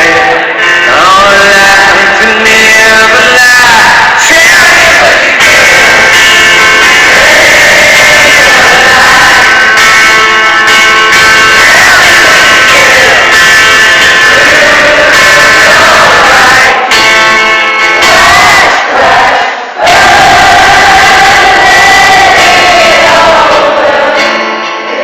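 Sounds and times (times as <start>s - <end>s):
electric guitar: 0.0s - 19.2s, 24.1s - 25.0s
live rock band playing: 16.8s - 18.8s.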